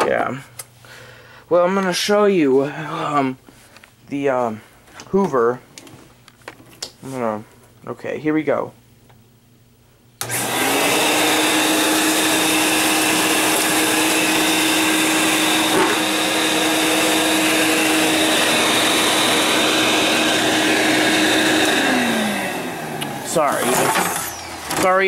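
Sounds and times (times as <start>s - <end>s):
vacuum cleaner running: 10.2s - 25.0s.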